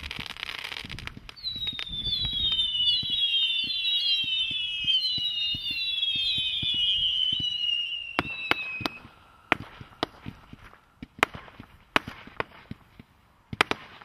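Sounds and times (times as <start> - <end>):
firework whistles sliding down: 0.0 - 10.9
sharp firework cracks: 0.0 - 14.0
small firework pops: 0.0 - 14.0.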